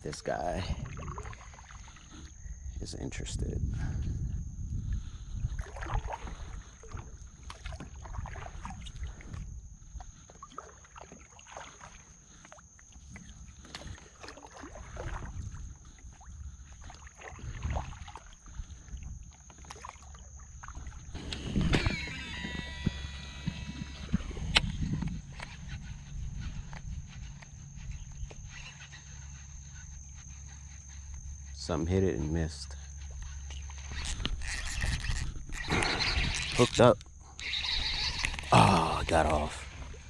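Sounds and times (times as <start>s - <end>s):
wind rumbling on microphone: 0.0s - 10.4s, 13.0s - 19.4s, 20.2s - 31.6s, 32.8s - 40.0s
paddle splashing in water: 0.8s - 2.3s, 5.6s - 22.0s
fishing reel spool whirring: 21.0s - 30.9s, 32.9s - 40.0s.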